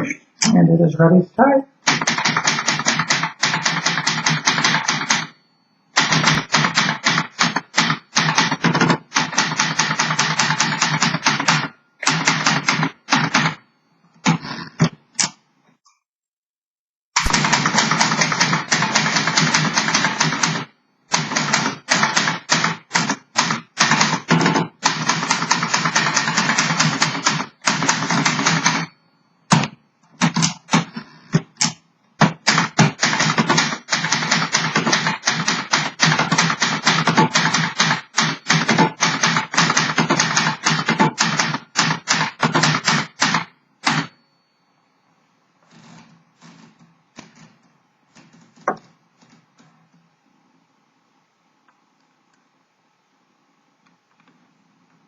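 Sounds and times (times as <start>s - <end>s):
manual typewriter keystrokes: 1.8s - 5.4s, 6.0s - 13.6s, 17.2s - 28.9s, 29.5s - 30.9s, 31.5s - 44.2s.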